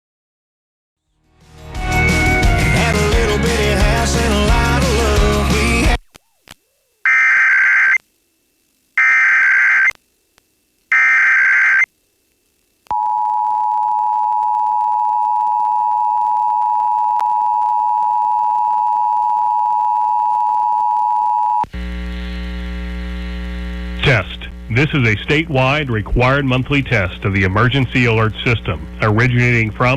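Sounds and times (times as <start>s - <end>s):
screechy digital data tones: 7.1s - 8.0s, 9.0s - 10.0s, 10.9s - 11.9s
low buzzing hum: 21.6s - 29.9s.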